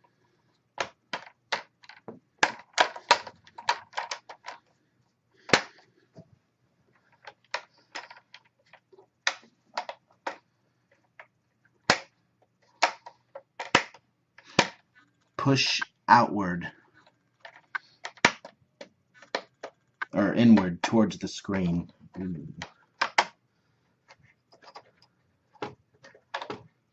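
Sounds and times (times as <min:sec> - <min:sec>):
plastic clips snapping into place: 0:12.8 - 0:14.8.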